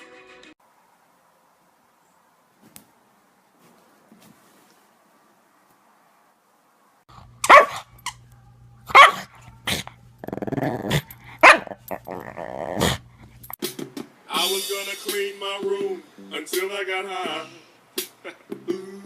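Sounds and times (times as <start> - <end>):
dog barking: 7.4 - 7.9, 8.9 - 9.9, 11.4 - 12.0
dog growling: 9.6 - 13.3.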